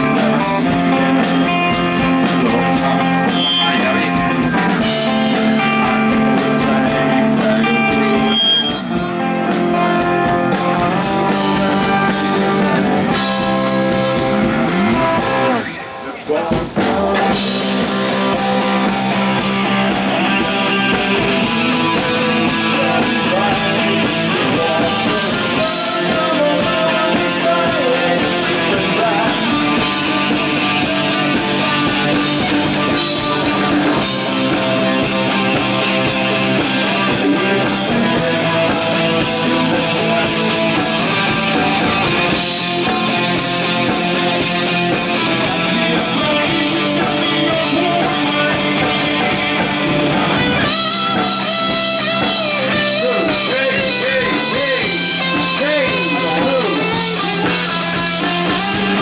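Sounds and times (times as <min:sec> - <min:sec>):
rock music with guitar and drums: 0:00.0 - 0:59.0.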